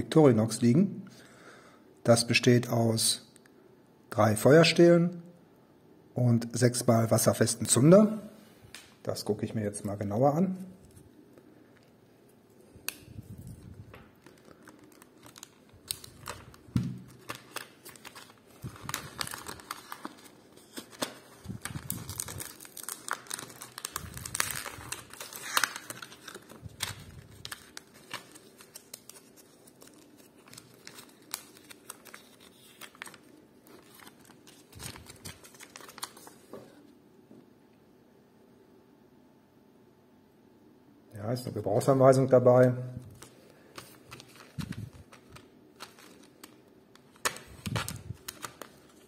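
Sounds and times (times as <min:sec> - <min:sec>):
packaging crinkling: 0:12.8 - 0:36.5, 0:43.1 - 0:49.0.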